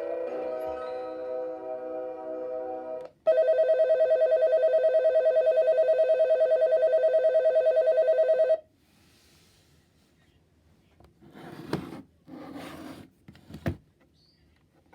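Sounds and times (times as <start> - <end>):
alarm clock electronic bell trilling: 0.0 - 8.6.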